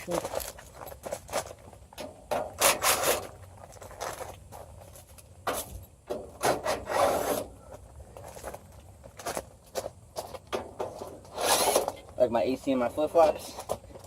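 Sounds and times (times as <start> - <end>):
metal parts scraping and rubbing: 2.5 - 3.4, 6.4 - 7.5, 10.8 - 12.0.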